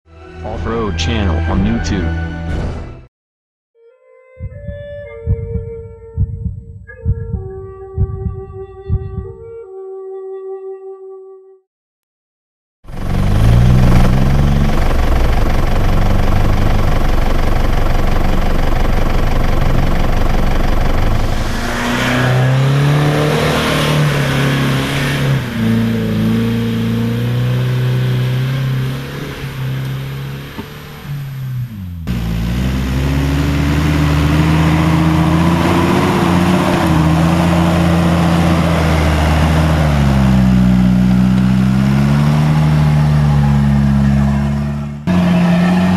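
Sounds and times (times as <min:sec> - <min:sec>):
vehicle engine revving: 0:12.8 - 0:45.9.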